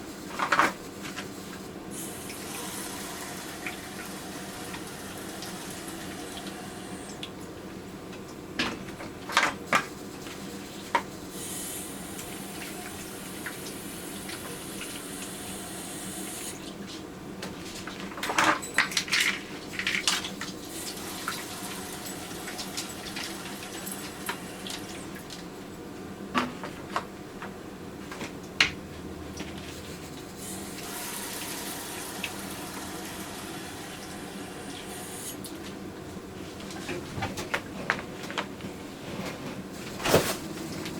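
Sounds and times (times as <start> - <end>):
faucet water running into sink: 2.0 - 7.1, 20.7 - 25.1, 30.8 - 35.3.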